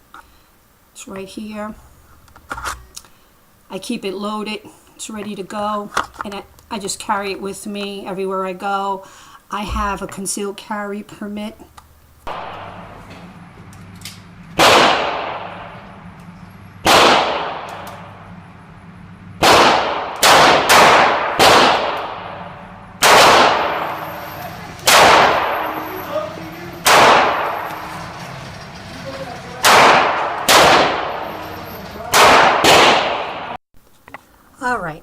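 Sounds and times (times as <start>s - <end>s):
echoing gunshots: 12.2s - 13.0s, 14.6s - 16.0s, 16.8s - 18.3s, 19.4s - 24.1s, 24.8s - 25.8s, 26.8s - 27.8s, 29.6s - 31.4s, 32.1s - 33.6s.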